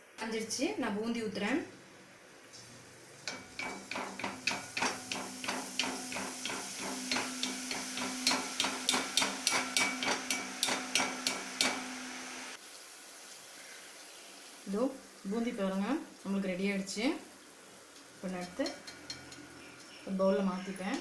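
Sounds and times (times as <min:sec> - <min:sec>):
metal mould tapping on pan rim: 0:03.3 - 0:11.8.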